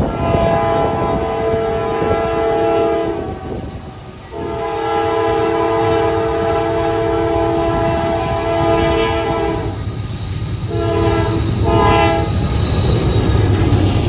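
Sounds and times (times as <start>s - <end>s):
locomotive horn chord: 0.0s - 3.7s, 4.3s - 9.8s, 10.7s - 12.3s
rumble of moving train: 0.0s - 14.0s.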